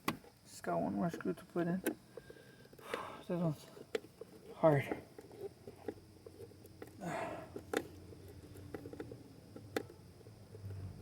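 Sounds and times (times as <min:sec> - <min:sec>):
screwdriver clicks and creaks: 0:03.6 - 0:11.0.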